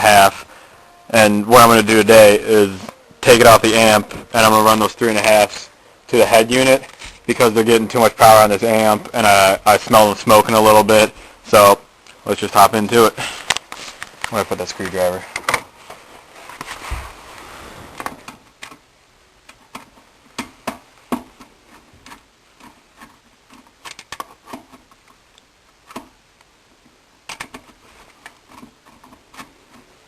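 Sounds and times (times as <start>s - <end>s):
rustle: 12.9s - 18.8s.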